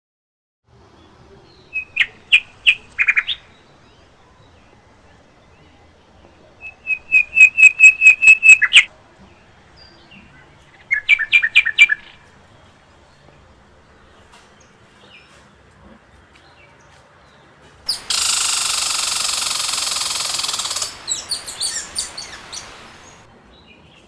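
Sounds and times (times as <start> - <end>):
faint bird chirps: 1.0 - 12.3, 17.9 - 23.3
fast-pulsing insect buzz: 17.9 - 23.2.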